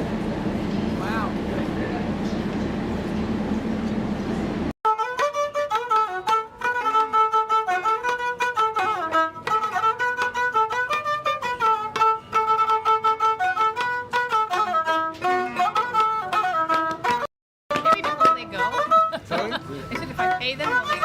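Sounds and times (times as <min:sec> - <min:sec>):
quick plucked notes: 0:04.9 - 0:21.0
sliding melody instrumental music: 0:04.9 - 0:21.0.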